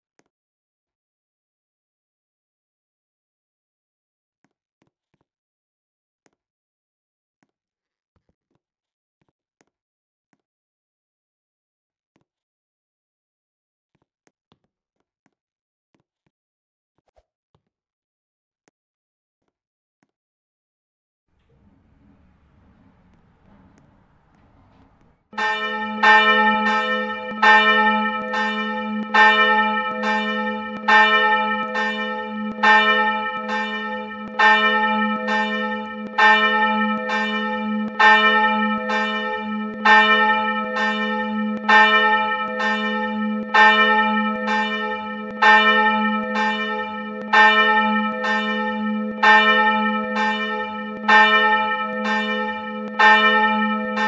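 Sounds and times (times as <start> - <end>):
church bell ringing: 21.5 - 54.0.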